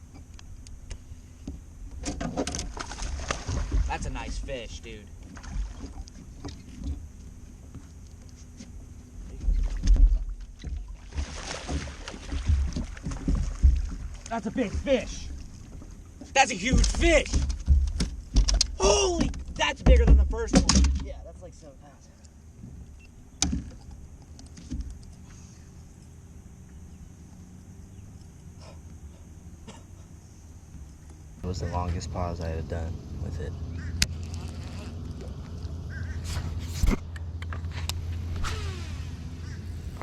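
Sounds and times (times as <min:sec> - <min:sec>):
knocks on boat: 0:01.5 - 0:04.5, 0:09.4 - 0:15.1, 0:16.6 - 0:21.2
steady low rumble: 0:35.1 - 0:40.0.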